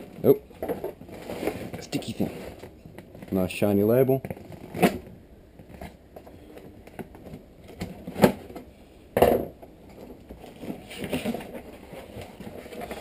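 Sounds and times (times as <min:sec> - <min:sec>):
packaging clicks and rustles: 0:09.9 - 0:13.0.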